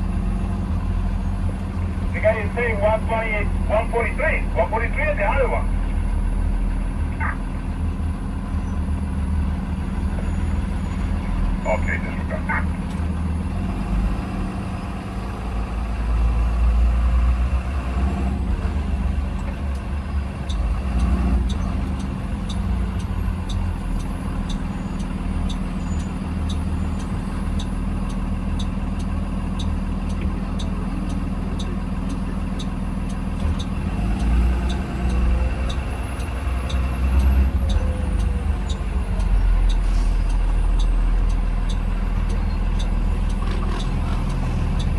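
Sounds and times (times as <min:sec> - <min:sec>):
bus engine running: 0:00.0 - 0:44.9
indicator flasher ticking: 0:20.4 - 0:44.9.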